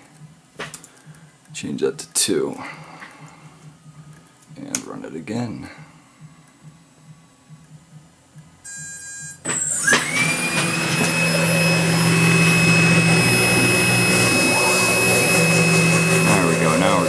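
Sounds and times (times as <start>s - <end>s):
spindle motor whine: 8.6s - 17.0s.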